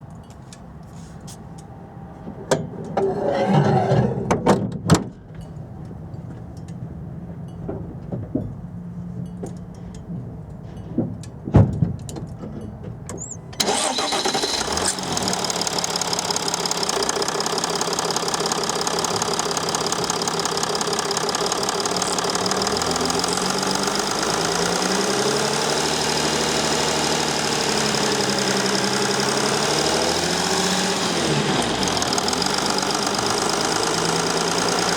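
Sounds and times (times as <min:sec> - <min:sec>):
knocks and clunks: 0:02.4 - 0:05.4, 0:10.6 - 0:13.6
diesel engine running: 0:13.2 - 0:34.9.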